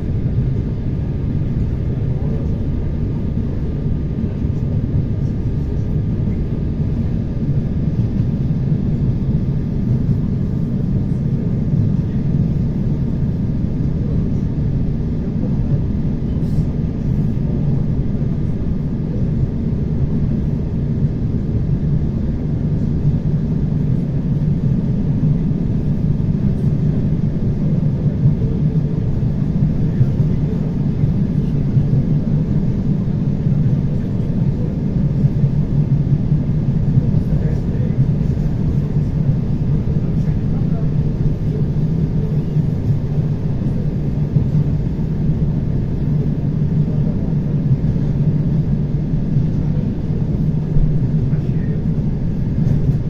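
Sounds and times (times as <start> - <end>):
faint steady whine: 0.0 - 53.0
train wheels rumbling on rails: 25.8 - 32.8.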